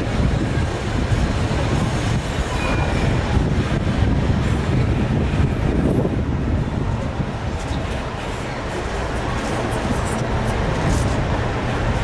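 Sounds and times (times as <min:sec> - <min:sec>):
tram rumbling and rattling: 0:00.0 - 0:12.0
faint squeal: 0:02.5 - 0:03.2.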